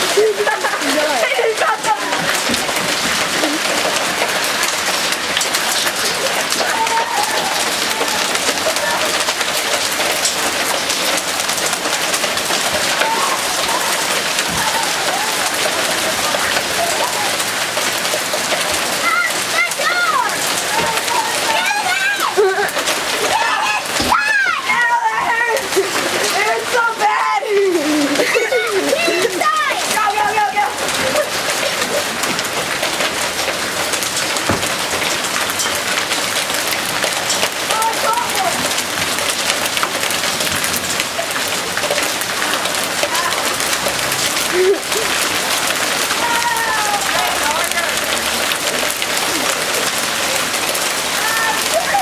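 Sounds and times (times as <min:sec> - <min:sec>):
hailstones hitting: 0:00.0 - 0:52.0
heavy knock: 0:34.5 - 0:34.8.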